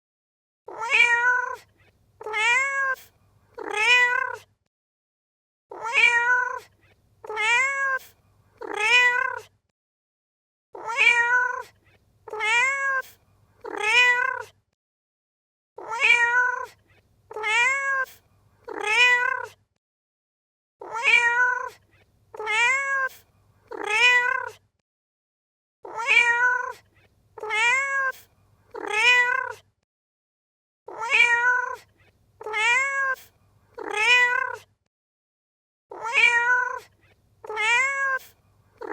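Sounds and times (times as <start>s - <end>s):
cat meowing: 0.7s - 4.5s, 5.7s - 9.5s, 10.8s - 14.6s, 15.8s - 19.6s, 20.8s - 24.6s, 25.9s - 29.6s, 30.9s - 34.7s, 35.9s - 38.9s.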